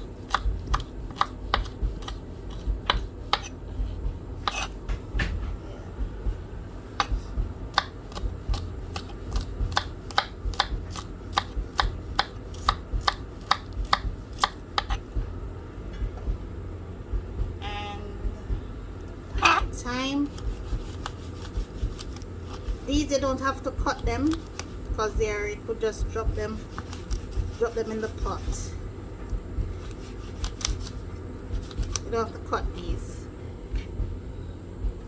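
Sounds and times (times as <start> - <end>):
knife chopping on cutting board: 0.1 - 5.4, 7.0 - 15.0, 19.4 - 24.7, 26.0 - 28.8, 29.6 - 32.1.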